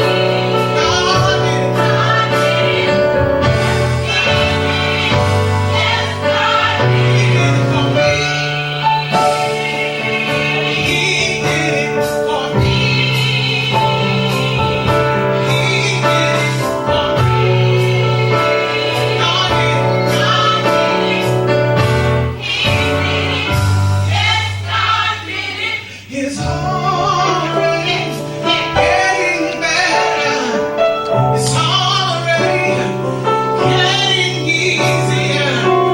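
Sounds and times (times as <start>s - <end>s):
bass line: 0.0s - 25.2s
gospel choir singing: 0.0s - 35.9s
steady drum beat: 0.1s - 25.1s.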